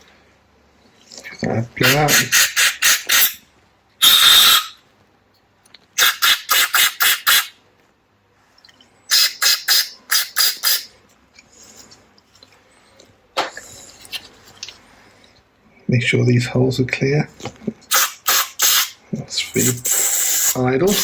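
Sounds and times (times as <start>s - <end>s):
sharp puffs of hissing air: 1.8s - 3.4s, 4.0s - 4.8s, 6.0s - 7.6s, 9.1s - 10.9s, 17.9s - 19.0s, 19.6s - 21.0s.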